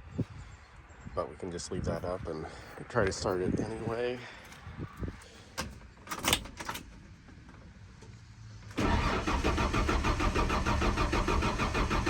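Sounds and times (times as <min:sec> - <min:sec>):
starter cranking engine: 0:08.8 - 0:12.0.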